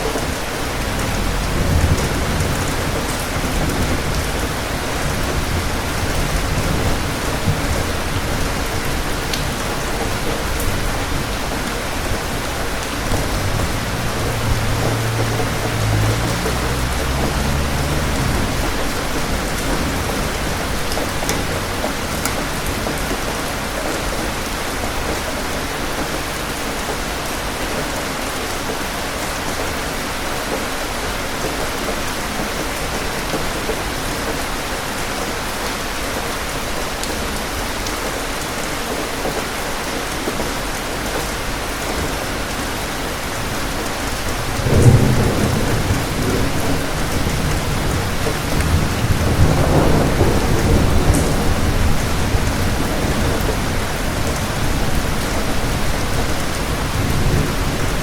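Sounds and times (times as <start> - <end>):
steady rain falling: 0.0 - 58.0
thunder rumbling: 0.1 - 23.7, 44.2 - 58.0.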